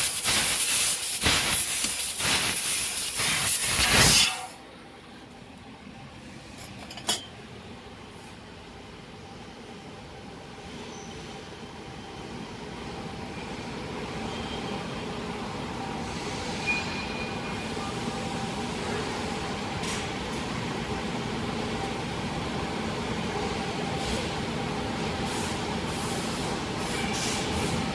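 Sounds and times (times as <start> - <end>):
short hissing bursts: 0.0 - 4.6.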